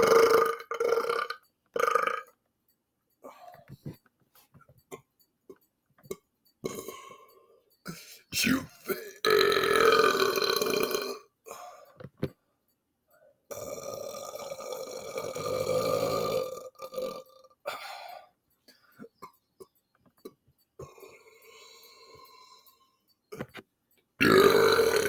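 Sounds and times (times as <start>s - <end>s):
man burping: 0.0s - 2.4s, 6.0s - 7.3s, 7.9s - 11.9s, 13.5s - 18.3s, 24.2s - 25.0s.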